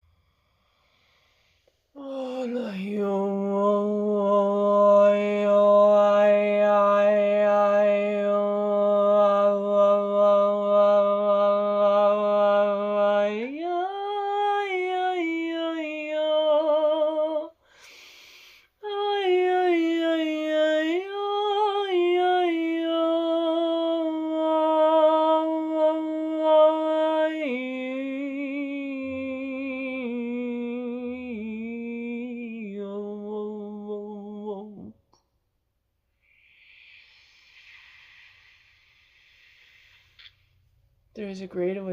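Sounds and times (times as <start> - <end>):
person humming and singing notes: 2.0 - 17.5.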